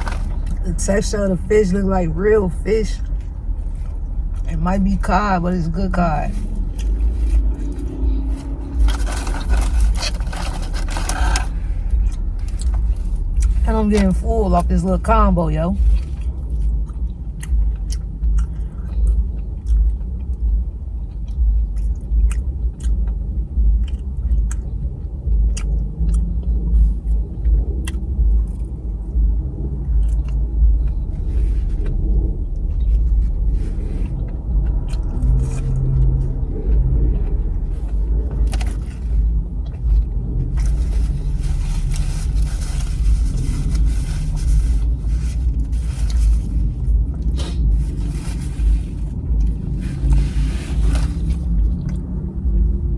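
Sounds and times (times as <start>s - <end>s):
low rumble: 0.0s - 52.9s
chewing with wet mouth clicks: 15.8s - 31.0s, 51.2s - 52.8s.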